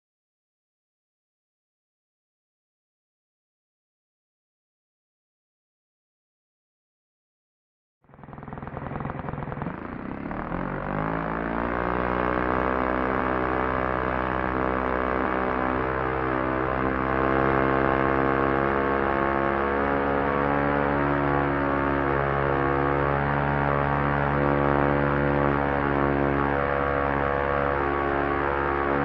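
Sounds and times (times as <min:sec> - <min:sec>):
propeller airplane engine starting: 0:08.0 - 0:29.0.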